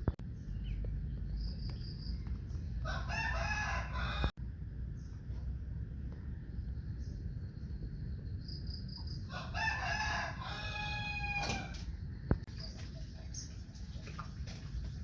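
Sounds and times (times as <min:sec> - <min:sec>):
low background rumble: 0:00.0 - 0:15.0
rooster crowing: 0:02.8 - 0:04.3, 0:09.3 - 0:11.9.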